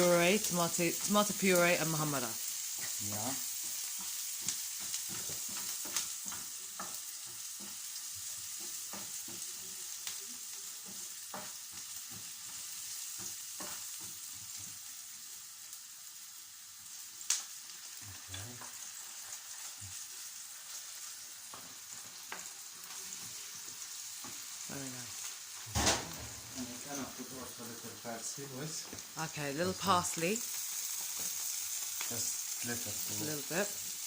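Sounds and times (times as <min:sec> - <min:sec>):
onions sizzling in oil: 0:00.0 - 0:34.0.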